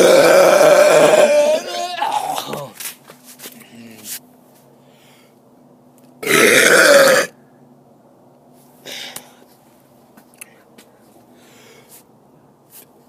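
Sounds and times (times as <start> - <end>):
man burping: 0.0 - 2.7, 6.2 - 7.4.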